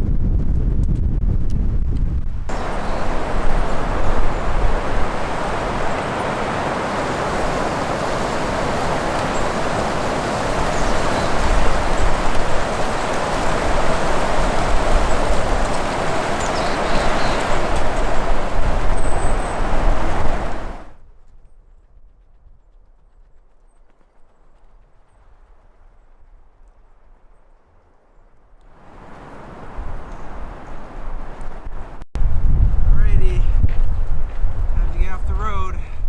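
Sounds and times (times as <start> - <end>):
gusty wind buffeting microphone: 0.0 - 23.3, 28.7 - 36.0.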